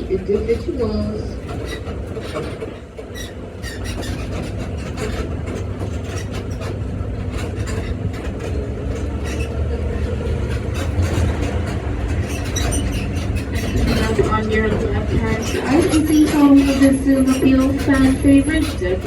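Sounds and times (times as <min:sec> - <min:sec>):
tram engine hum: 0:00.0 - 0:19.0
carriage clicks and rattles: 0:01.4 - 0:19.0.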